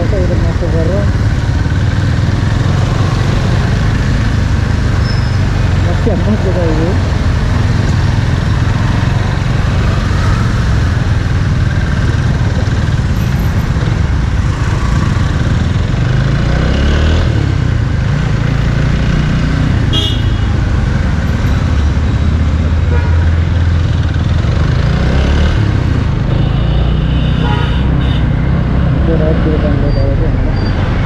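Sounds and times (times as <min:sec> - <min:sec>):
motorcycle engine rumbling: 0:00.0 - 0:31.0
high horn toot: 0:19.9 - 0:20.6, 0:22.9 - 0:23.4, 0:26.3 - 0:28.4.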